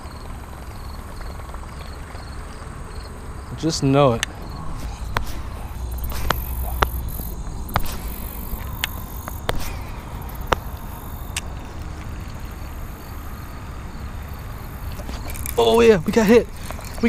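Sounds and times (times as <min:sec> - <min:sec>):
wind rumbling on microphone: 0:00.0 - 0:17.0
sharp clicks: 0:04.2 - 0:12.4.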